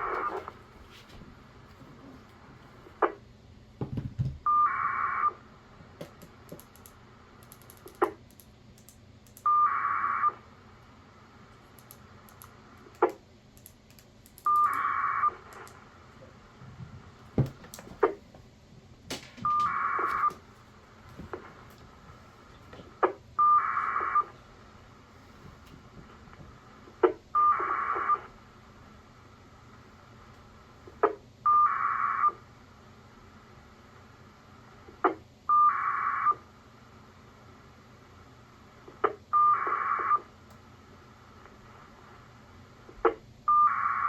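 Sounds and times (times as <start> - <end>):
radio click: 0.0 - 0.6.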